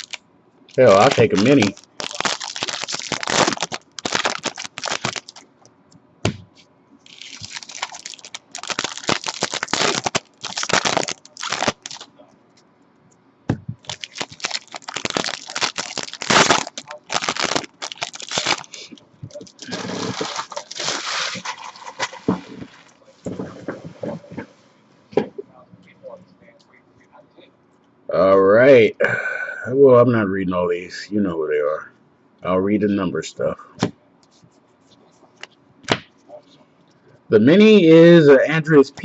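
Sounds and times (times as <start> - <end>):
card pack wrappers crinkling and tearing: 0.0 - 5.5, 7.1 - 12.1, 13.8 - 23.8.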